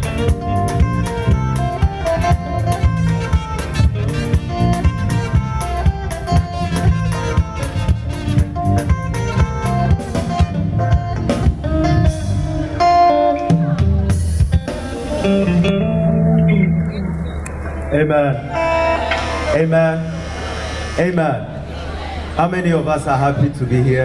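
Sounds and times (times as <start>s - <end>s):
drum kit beat: 0.0s - 17.7s
electric guitar: 0.0s - 21.0s
bass guitar: 0.0s - 21.7s.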